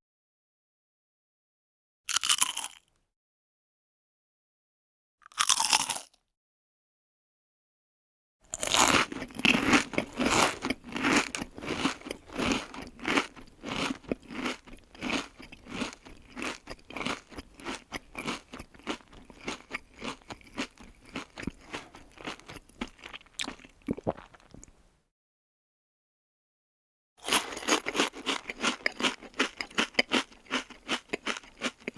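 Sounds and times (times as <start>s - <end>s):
crunchy chewing: 8.5s - 24.8s, 27.2s - 31.9s
person biting crisp food: 8.6s - 24.8s, 27.2s - 31.9s.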